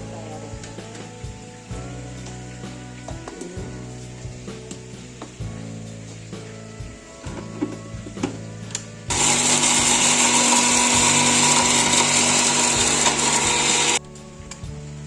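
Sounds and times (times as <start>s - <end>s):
mixer grinder grinding spices: 9.1s - 14.0s.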